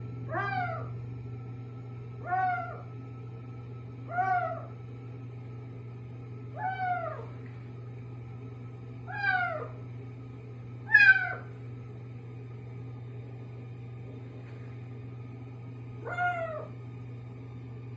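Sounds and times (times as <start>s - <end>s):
kitten meowing: 2.3s - 2.9s, 6.6s - 7.3s, 9.1s - 9.8s, 10.9s - 11.5s, 16.0s - 16.7s.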